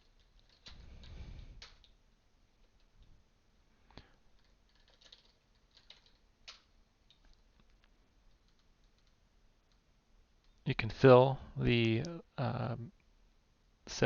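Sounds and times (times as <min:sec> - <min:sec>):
keyboard typing: 0:00.0 - 0:03.1, 0:04.3 - 0:09.8.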